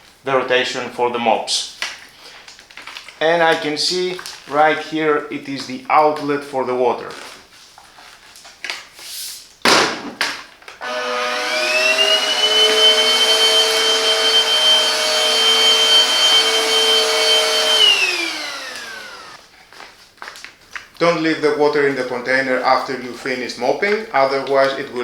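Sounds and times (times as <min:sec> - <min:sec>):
vacuum cleaner motor whine: 0:10.8 - 0:19.4.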